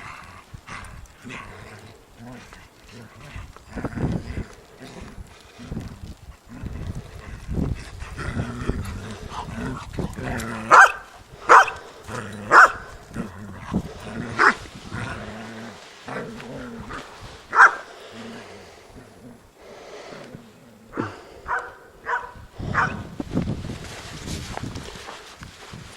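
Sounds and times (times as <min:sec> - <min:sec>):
dog growling low: 0:00.0 - 0:24.0
dog barking sharply: 0:10.7 - 0:11.8, 0:12.5 - 0:12.8, 0:17.5 - 0:17.8, 0:21.5 - 0:23.0.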